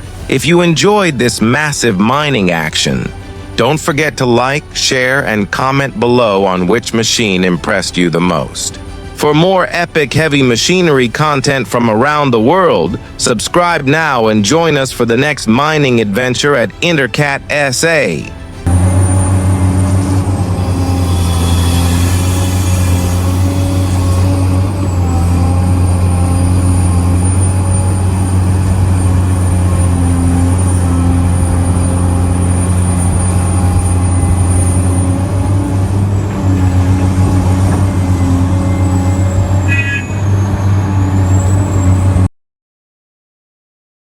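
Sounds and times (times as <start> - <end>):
heavy diesel machinery drone: 0.0 - 42.3
thin high whine: 17.6 - 42.3
brief high tone: 36.1 - 40.8.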